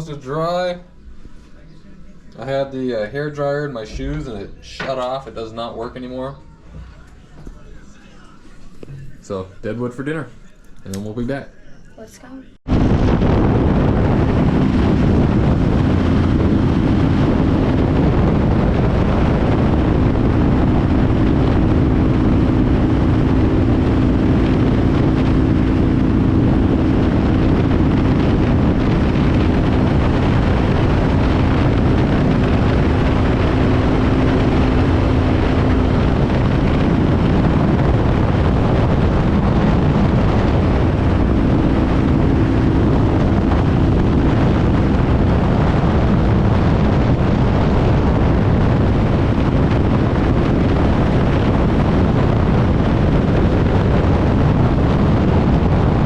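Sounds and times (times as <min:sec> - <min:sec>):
wind rush on microphone: 0:12.6 - 0:56.0.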